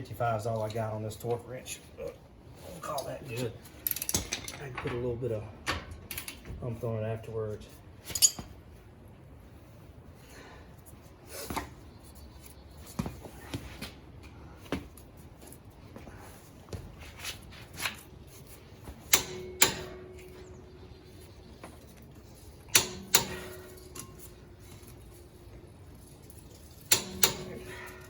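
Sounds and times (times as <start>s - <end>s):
hand tools and metal parts clicking: 2.9s - 6.5s, 8.0s - 8.5s, 17.8s - 28.0s.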